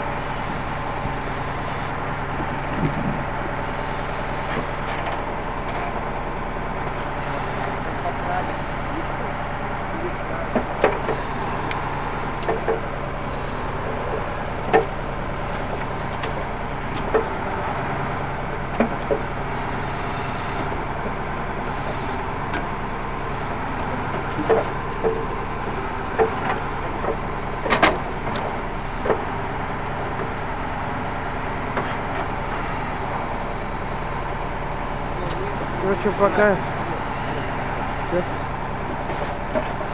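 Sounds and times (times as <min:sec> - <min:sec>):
truck engine running: 0:00.0 - 0:39.9
logs knocking and clanking: 0:10.5 - 0:13.0, 0:14.6 - 0:17.4, 0:23.8 - 0:29.3, 0:38.8 - 0:39.9.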